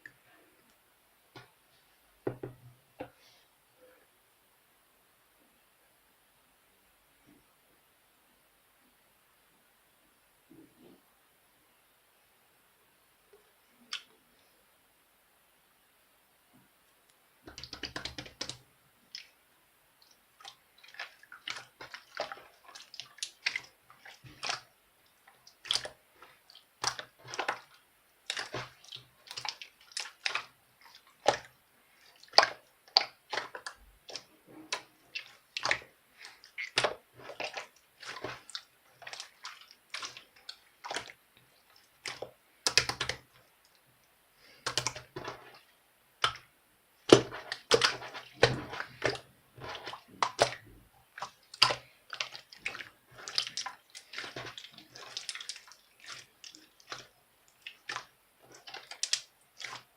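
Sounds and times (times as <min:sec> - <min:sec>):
slime squished by hand: 0:44.5 - 0:59.9.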